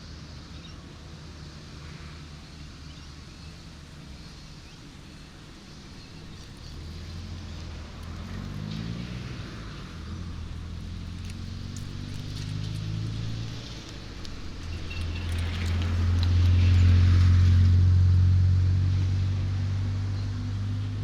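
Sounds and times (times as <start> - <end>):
vehicle engine hum: 0.0 - 21.0
vehicle passing: 5.6 - 21.0.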